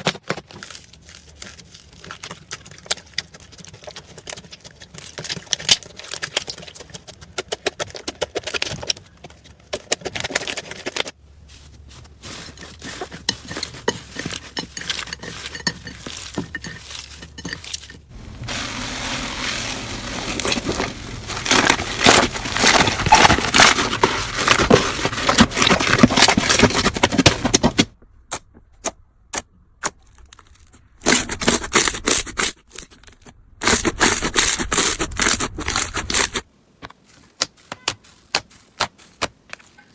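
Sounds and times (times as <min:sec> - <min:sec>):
slime crackling and crunching: 0:00.5 - 0:09.0, 0:14.1 - 0:27.6.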